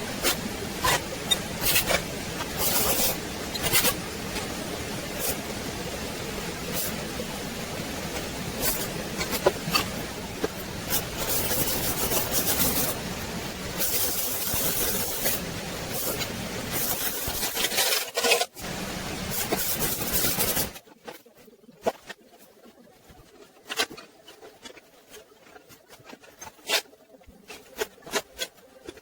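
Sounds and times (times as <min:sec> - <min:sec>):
metal rasping and scraping: 0:00.0 - 0:06.0, 0:06.6 - 0:20.8.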